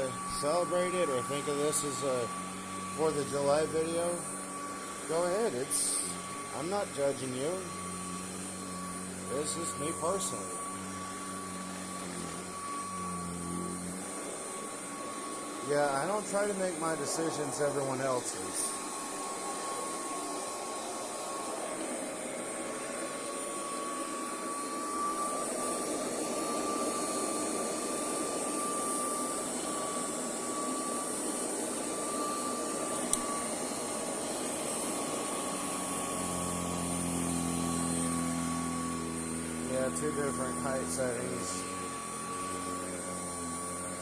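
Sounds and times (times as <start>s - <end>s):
vacuum cleaner running: 0.0s - 44.0s
click: 33.1s - 33.3s.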